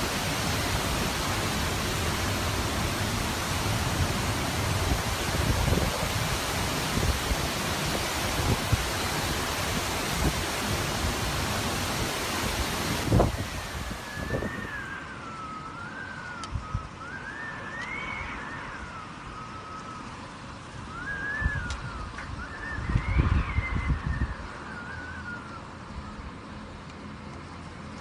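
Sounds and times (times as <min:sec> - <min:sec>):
wind gusts buffeting microphone: 0:00.0 - 0:15.0, 0:21.4 - 0:24.6
storm wind and rain roaring: 0:00.0 - 0:28.0
high wavering whistle: 0:13.1 - 0:26.2.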